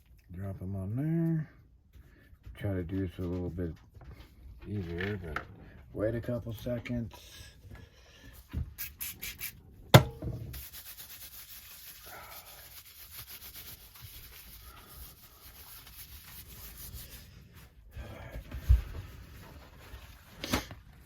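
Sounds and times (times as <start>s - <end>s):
sharp knock: 9.9s - 10.5s
rubbing on paper: 10.5s - 17.8s.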